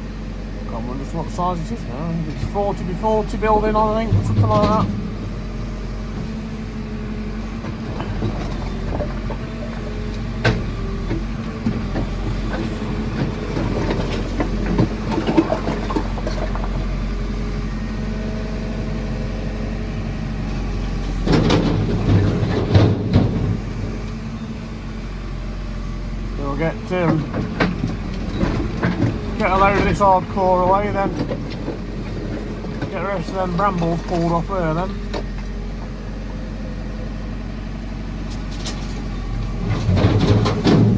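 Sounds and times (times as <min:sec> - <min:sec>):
diesel engine running: 0:00.0 - 0:40.9
bucket knocking and scraping rubble: 0:12.6 - 0:16.9.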